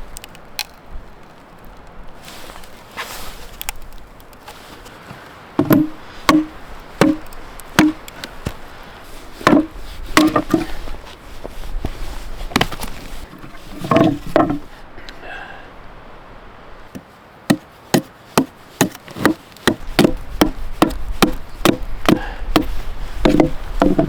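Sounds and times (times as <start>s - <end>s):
axe chopping wood: 5.6s - 8.6s, 9.4s - 10.8s, 12.5s - 12.9s, 17.5s - 24.0s.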